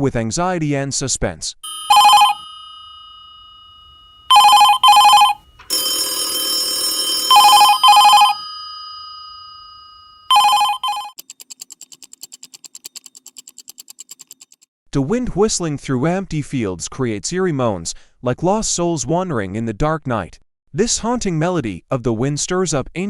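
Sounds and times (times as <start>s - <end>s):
telephone ringing: 1.6s - 11.2s.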